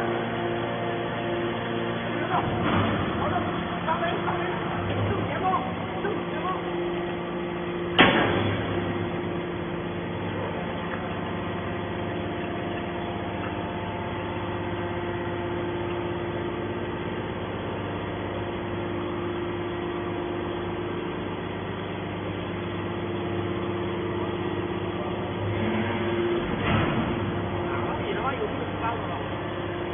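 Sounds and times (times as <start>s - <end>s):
hydraulic power unit humming: 0.0s - 29.9s
sharp bang: 8.0s - 8.8s.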